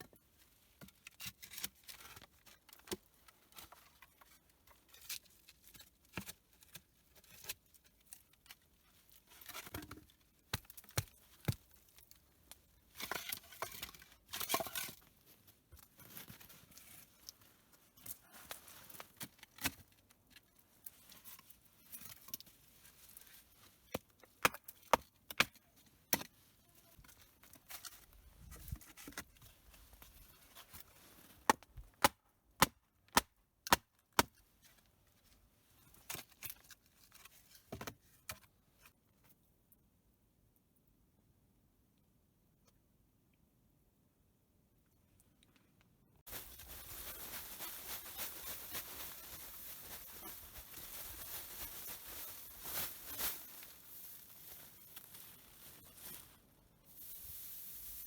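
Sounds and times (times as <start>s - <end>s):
rustling: 46.3s - 58.0s.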